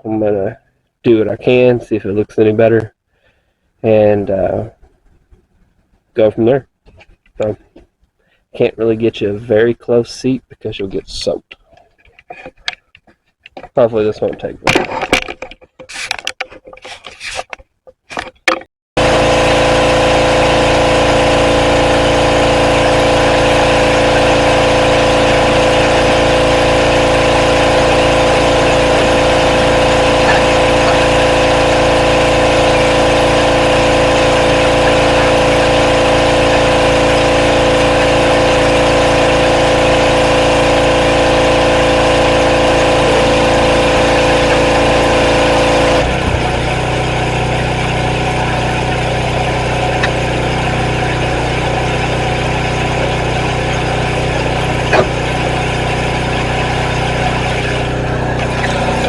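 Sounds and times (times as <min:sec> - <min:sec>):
pressure washer running: 0:19.0 - 0:59.0.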